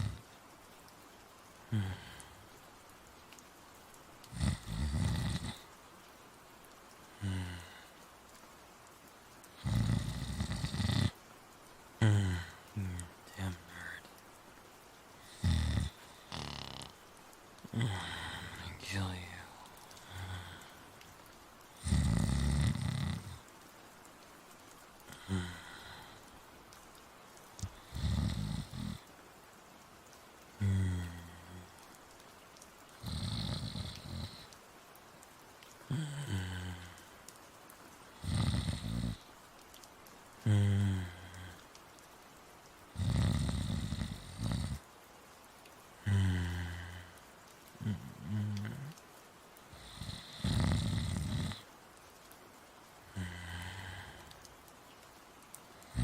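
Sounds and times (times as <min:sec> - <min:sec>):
person snoring: 0:01.7 - 0:02.3, 0:04.3 - 0:05.6, 0:07.2 - 0:07.8, 0:09.6 - 0:11.2, 0:12.0 - 0:14.0, 0:15.2 - 0:16.9, 0:17.7 - 0:20.8, 0:21.8 - 0:23.4, 0:25.1 - 0:26.2, 0:27.6 - 0:29.0, 0:30.6 - 0:31.7, 0:33.0 - 0:34.5, 0:35.9 - 0:37.0, 0:38.2 - 0:39.2, 0:40.4 - 0:41.6, 0:43.0 - 0:44.8, 0:46.0 - 0:47.1, 0:47.8 - 0:49.0, 0:49.7 - 0:51.7, 0:53.1 - 0:54.4.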